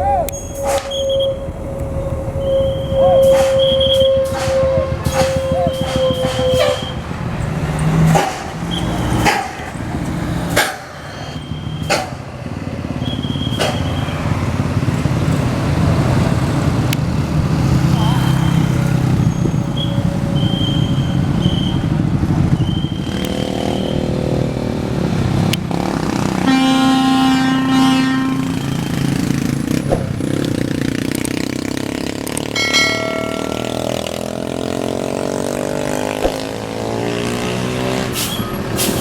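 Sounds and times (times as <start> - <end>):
bus horn blasts: 0.0 - 7.4, 25.7 - 29.8
bus engines running: 0.0 - 39.0.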